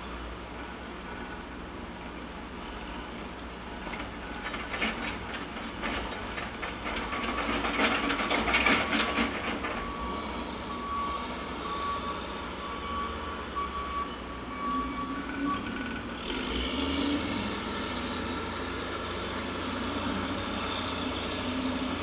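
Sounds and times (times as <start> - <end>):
machinery clattering and knocking: 3.8 - 11.0.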